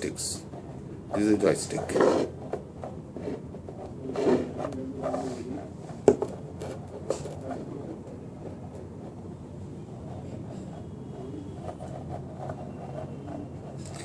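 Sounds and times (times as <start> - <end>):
rubbing handling noises: 0.0 - 14.0.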